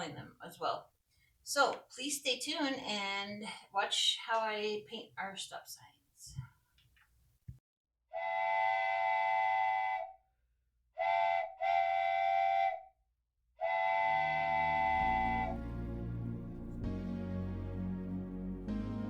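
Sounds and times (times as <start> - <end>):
train whistle blasts: 8.1 - 10.2, 11.0 - 12.9, 13.6 - 15.8
low music: 14.1 - 19.0.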